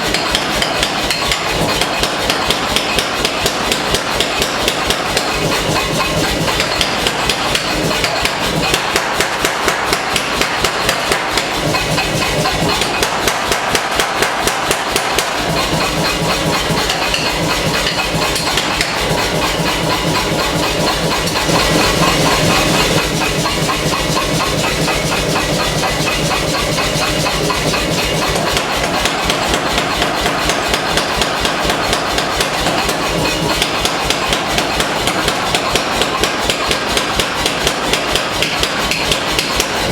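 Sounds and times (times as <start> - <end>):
power hammer pounding hot steel: 0.0 - 39.9.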